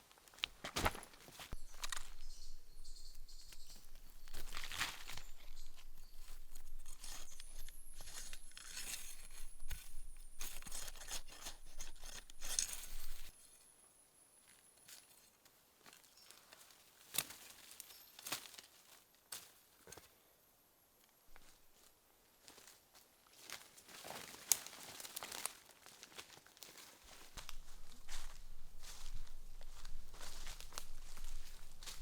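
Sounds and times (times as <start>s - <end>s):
dry crackling and rustling: 0.2s - 13.4s, 23.3s - 32.0s.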